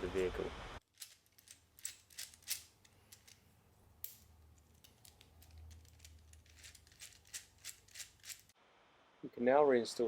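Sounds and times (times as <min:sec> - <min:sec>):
plastic parts clicking and clacking: 0:00.8 - 0:08.6.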